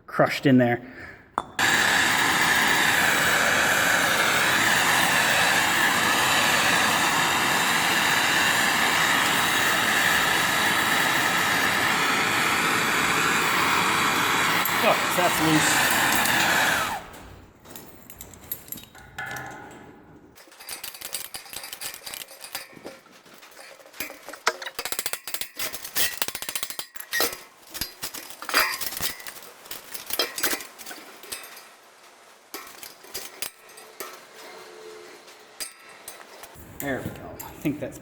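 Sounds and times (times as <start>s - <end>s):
metal tools clinking: 17.6s - 36.6s.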